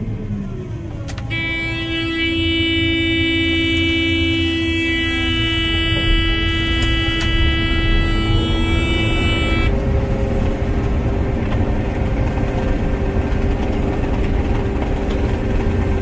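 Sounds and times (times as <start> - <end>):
low engine rumble: 0.0 - 16.0
loud steady high tone: 1.2 - 9.8.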